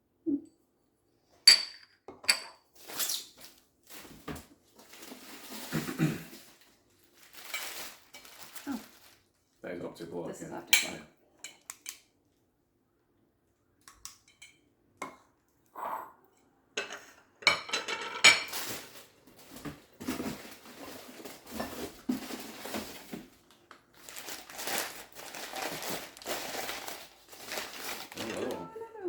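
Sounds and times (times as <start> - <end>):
rustling: 2.8 - 9.5, 18.5 - 28.8.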